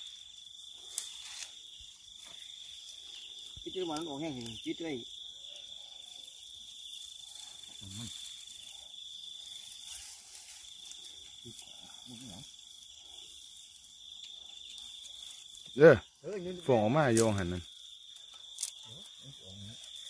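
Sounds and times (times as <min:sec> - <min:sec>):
high-pitched insect drone: 0:00.0 - 0:20.0.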